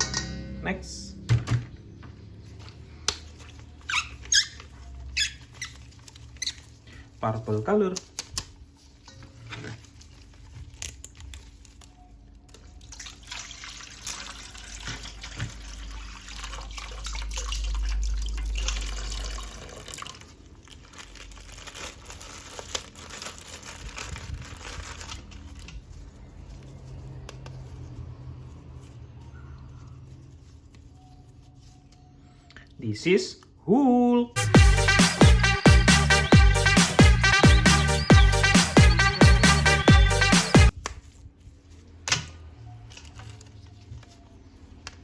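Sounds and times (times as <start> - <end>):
water running and splashing: 12.9 - 20.2.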